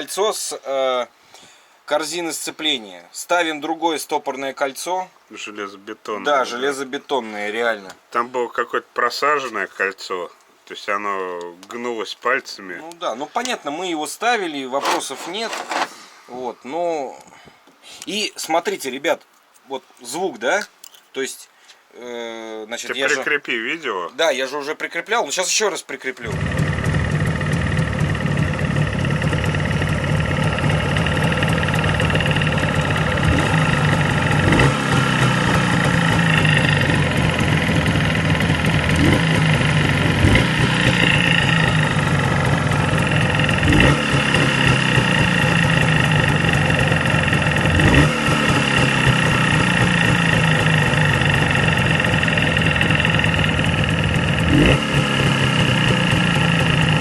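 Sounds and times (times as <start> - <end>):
engine throttle blips: 26.3 - 45.8
motorcycle engine idling: 26.3 - 57.0.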